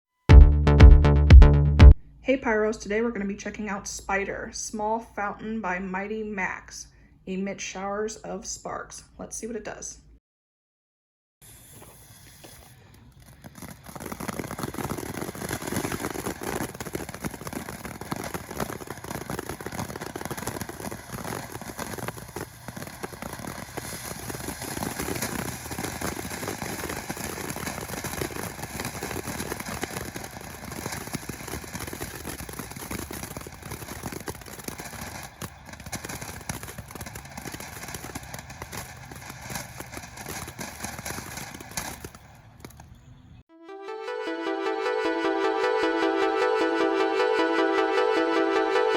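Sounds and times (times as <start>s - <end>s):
firework fountain hissing and crackling: 11.4s - 42.1s.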